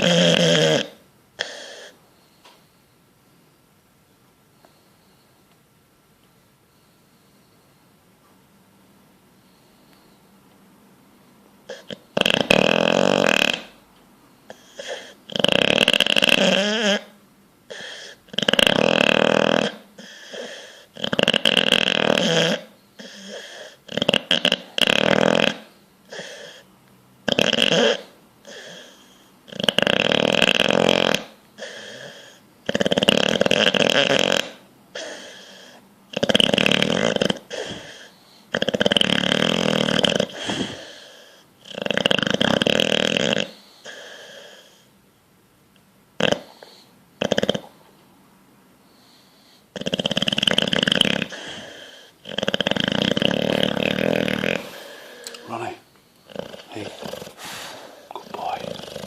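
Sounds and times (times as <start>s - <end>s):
dog snoring: 0.0s - 2.0s, 11.6s - 13.9s, 14.5s - 44.9s, 46.2s - 48.0s, 48.8s - 59.0s.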